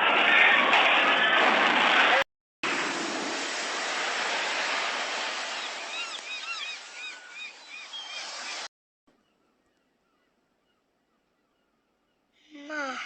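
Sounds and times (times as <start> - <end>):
steady rushing noise: 2.6 - 8.7
whistled chirps: 5.5 - 8.7.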